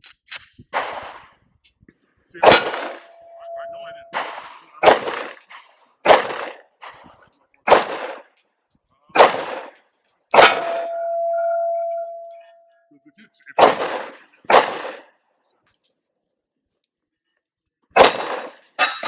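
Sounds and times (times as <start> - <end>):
pistol shots: 0.7 - 1.3, 2.4 - 7.0, 7.6 - 8.4, 9.2 - 11.1, 13.6 - 15.2, 17.9 - 18.7
steel target ringing: 2.6 - 4.2, 10.4 - 12.7.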